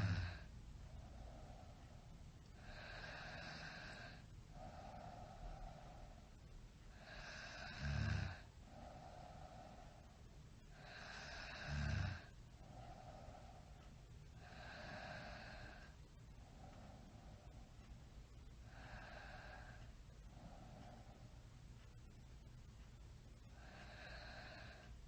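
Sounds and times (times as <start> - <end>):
person snoring: 0.0 - 0.4, 2.6 - 6.1, 7.0 - 9.7, 10.8 - 13.1, 14.4 - 15.9, 23.6 - 24.8
breathing hiss: 0.0 - 17.9, 18.6 - 21.4, 23.5 - 25.0.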